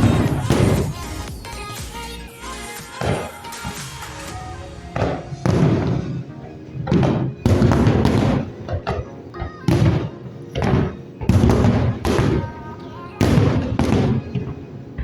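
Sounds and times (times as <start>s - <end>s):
firework bangs: 0.0s - 2.0s, 2.6s - 15.0s
loud music with heavy bass: 0.0s - 5.9s.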